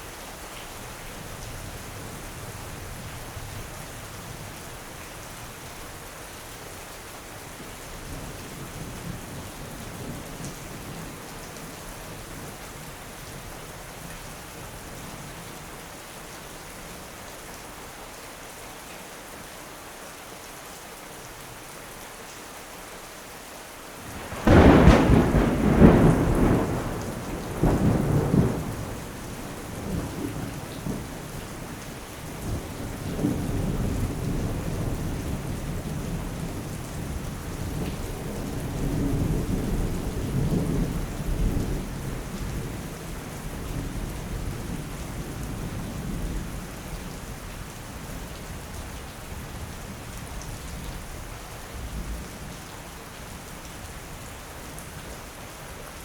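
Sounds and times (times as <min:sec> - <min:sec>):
steady rain: 0:00.0 - 0:56.0
thunder rumbling: 0:24.2 - 0:31.2.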